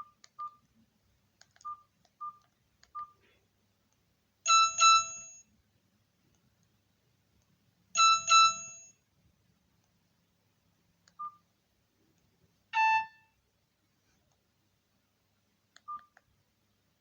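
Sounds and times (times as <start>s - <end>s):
keypad beep: 0.0s - 0.6s, 1.6s - 3.2s, 4.5s - 5.4s, 8.0s - 8.8s, 12.8s - 13.2s, 15.8s - 16.2s
phone two-note chime: 12.8s - 13.2s.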